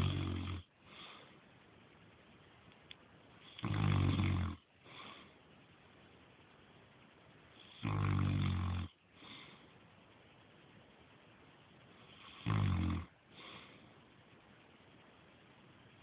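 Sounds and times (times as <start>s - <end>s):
man snoring: 0.0s - 0.7s, 3.5s - 4.6s, 7.6s - 9.0s, 12.2s - 13.1s.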